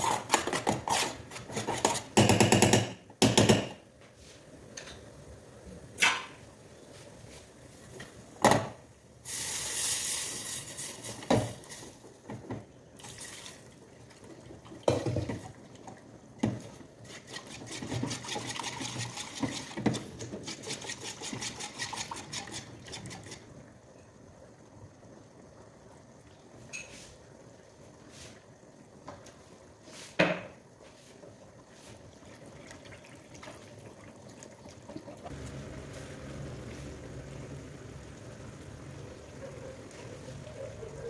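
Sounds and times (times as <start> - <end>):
rapid scraping or stirring: 0.0 - 2.2, 17.0 - 23.5
utensil knocking on cookware: 2.1 - 3.8.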